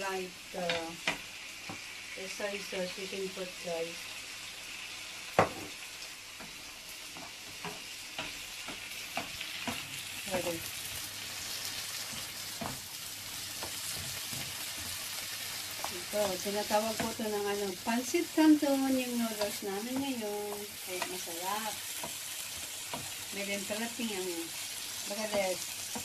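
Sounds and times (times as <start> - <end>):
noodles sizzling in a pan: 0.0 - 26.0
knocks against the pan: 5.4 - 5.8.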